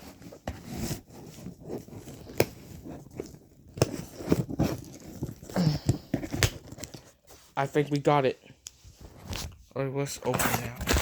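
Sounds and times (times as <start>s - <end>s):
tape and cardboard crackling: 0.0s - 7.4s, 10.3s - 11.0s.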